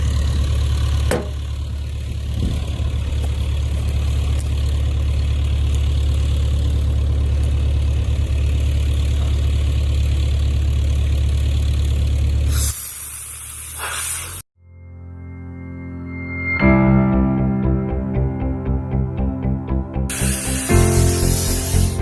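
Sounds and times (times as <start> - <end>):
heavy engine droning: 0.0 - 13.4, 20.0 - 22.0.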